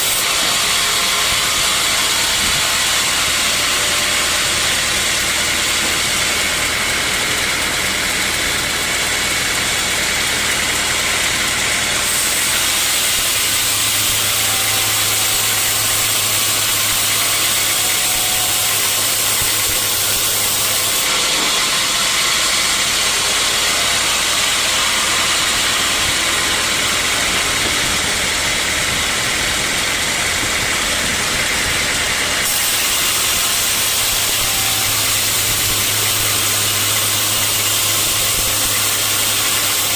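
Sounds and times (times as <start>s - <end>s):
broad machinery hiss: 12.0s - 29.2s, 29.9s - 39.9s
motor low hum: 19.1s - 38.8s.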